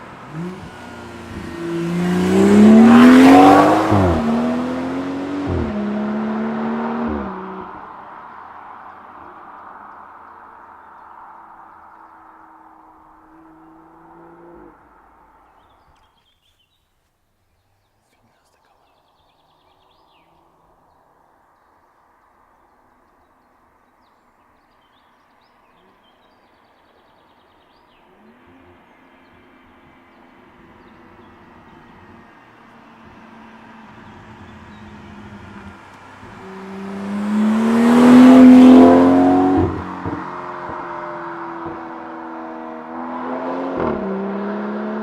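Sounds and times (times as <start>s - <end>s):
car engine accelerating past: 0.0s - 16.0s, 27.3s - 45.0s.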